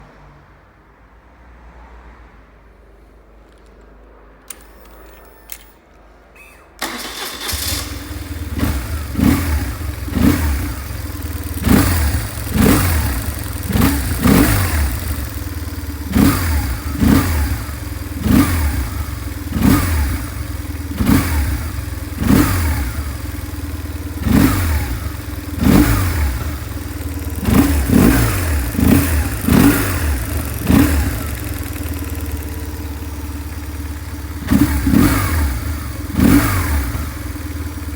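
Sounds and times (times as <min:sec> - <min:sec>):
motorcycle engine idling: 0:06.8 - 0:37.9.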